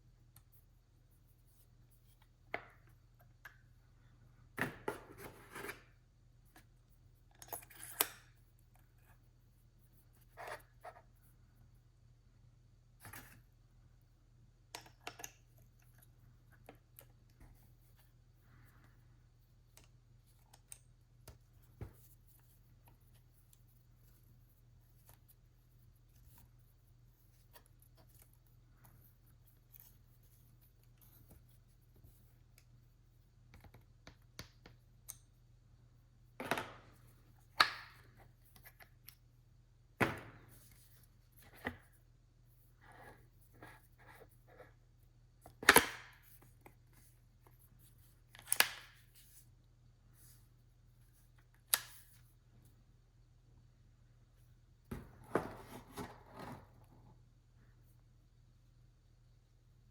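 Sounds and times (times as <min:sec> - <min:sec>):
faint steady hum: 0:00.0 - 0:59.9.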